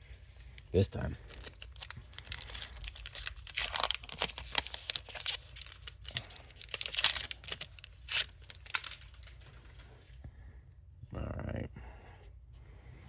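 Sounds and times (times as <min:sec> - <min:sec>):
foil wrapper crinkling and tearing: 0:00.6 - 0:09.8.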